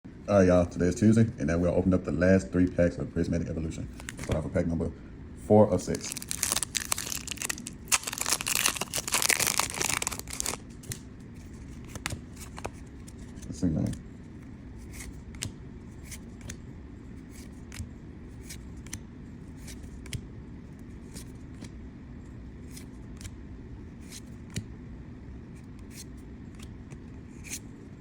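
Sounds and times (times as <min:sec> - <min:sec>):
steady low hum: 0:00.1 - 0:28.0
cards being flipped: 0:04.0 - 0:04.4, 0:05.9 - 0:14.0, 0:14.8 - 0:16.6, 0:17.2 - 0:20.2, 0:22.6 - 0:23.4, 0:25.7 - 0:27.7.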